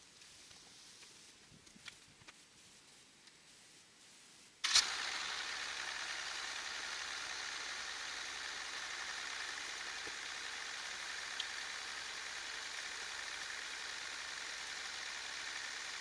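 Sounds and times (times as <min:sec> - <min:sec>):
diesel engine idling: 0:04.8 - 0:16.0.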